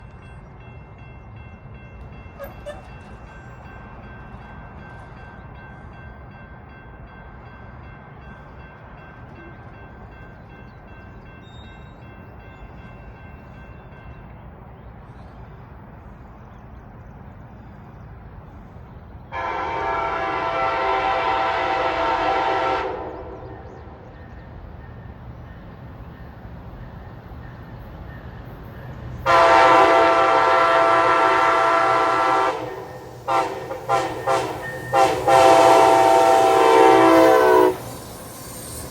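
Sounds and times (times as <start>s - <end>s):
low train rumble: 0.0s - 38.9s
locomotive horn blasts: 19.3s - 23.7s, 29.2s - 38.0s.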